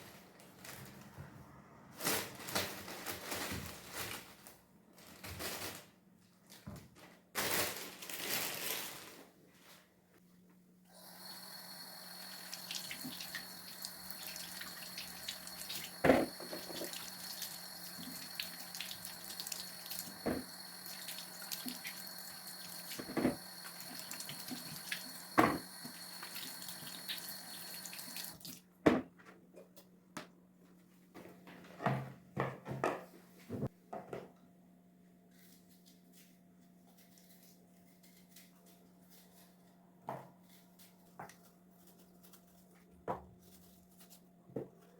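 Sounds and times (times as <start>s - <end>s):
tap running into a sink: 12.5s - 22.2s, 22.8s - 28.5s.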